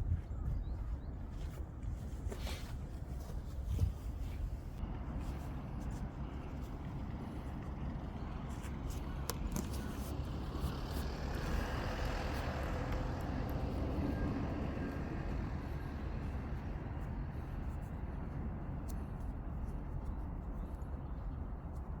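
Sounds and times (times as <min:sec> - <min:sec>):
steady low rumble: 0:00.0 - 0:22.0
motor vehicle passing by: 0:09.8 - 0:17.4.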